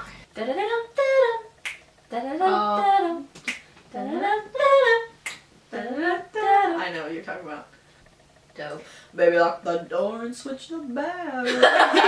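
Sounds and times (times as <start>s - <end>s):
woman singing wordless phrases: 0.3s - 3.3s, 3.9s - 7.7s, 8.6s - 11.6s
finger snaps: 1.6s - 1.8s, 3.4s - 3.7s, 5.2s - 5.4s.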